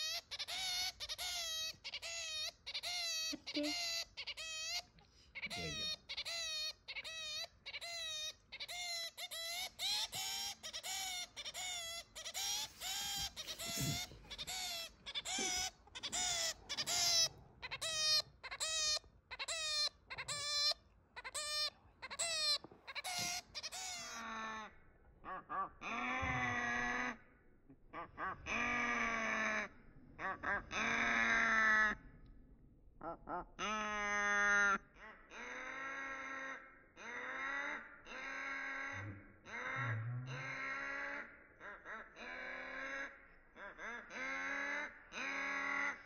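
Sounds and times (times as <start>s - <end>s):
finch calling: 0.0s - 24.4s.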